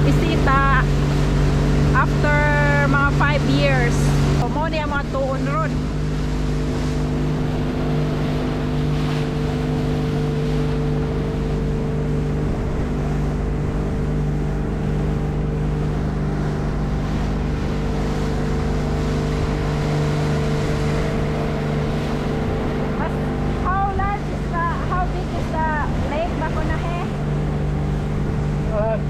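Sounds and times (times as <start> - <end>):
engine droning: 0.0 - 29.0
wind noise on microphone: 19.2 - 29.0.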